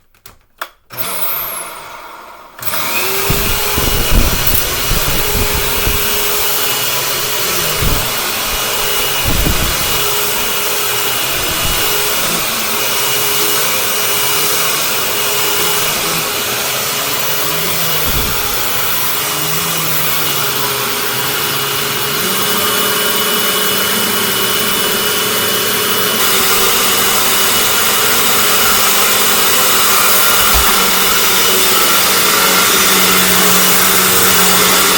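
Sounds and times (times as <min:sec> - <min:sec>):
vacuum cleaner motor whining: 0:00.9 - 0:34.9
low thumps: 0:03.0 - 0:12.9, 0:17.5 - 0:19.1.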